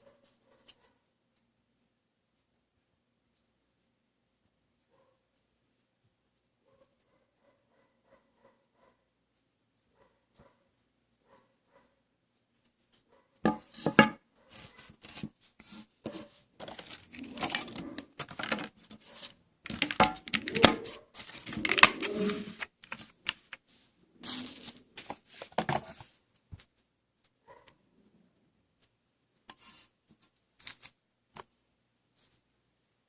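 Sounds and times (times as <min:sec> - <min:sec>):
packaging clicks and rustles: 0:16.6 - 0:23.7.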